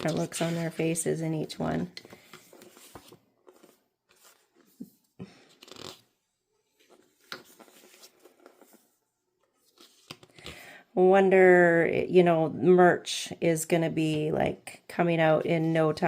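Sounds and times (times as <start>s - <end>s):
paper rustling and tapping: 6.8s - 8.7s.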